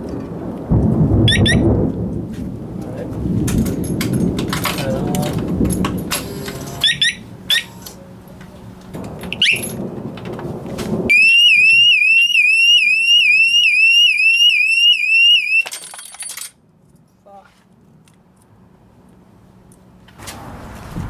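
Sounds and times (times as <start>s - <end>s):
motorcycle alarm siren whooping: 1.3s - 1.7s, 6.8s - 7.8s, 11.1s - 15.8s
short rising alarm chirp: 1.3s - 1.7s, 6.8s - 7.8s, 11.1s - 15.7s.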